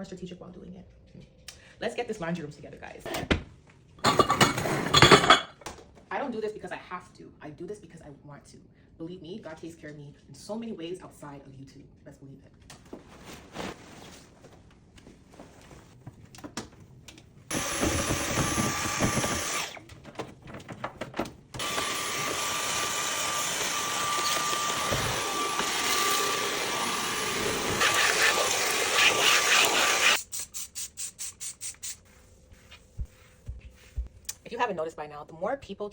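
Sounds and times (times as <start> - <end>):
vacuum cleaner running: 17.5 - 19.9, 21.6 - 30.2.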